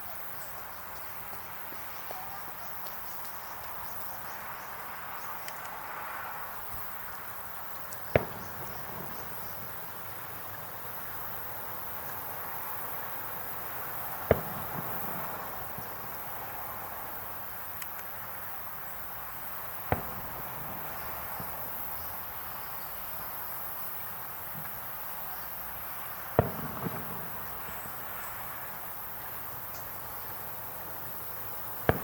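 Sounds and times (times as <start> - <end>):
insects chirping: 0.0 - 32.0
sharp bangs: 8.2 - 10.2, 14.2 - 16.2, 26.4 - 28.2.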